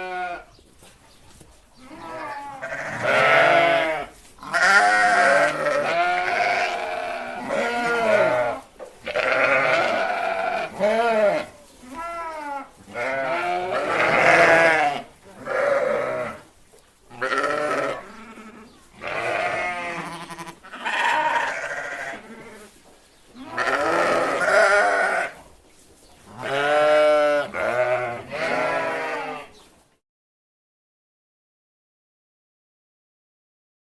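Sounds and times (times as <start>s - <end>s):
sheep bleating: 0.0s - 0.5s, 1.8s - 16.4s, 17.1s - 22.7s, 23.4s - 25.4s, 26.3s - 29.6s.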